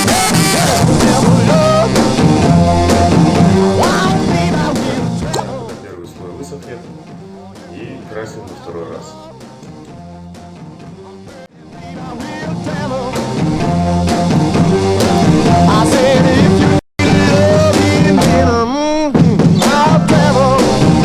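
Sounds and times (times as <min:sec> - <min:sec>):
song with singing over a band: 0:11.6 - 0:21.0.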